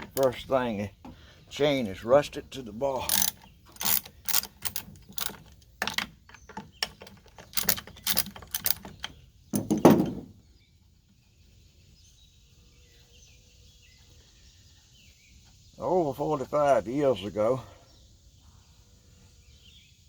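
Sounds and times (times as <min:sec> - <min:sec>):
metal parts clattering: 0:03.0 - 0:10.2
metal tools clicking and clinking: 0:03.0 - 0:10.2.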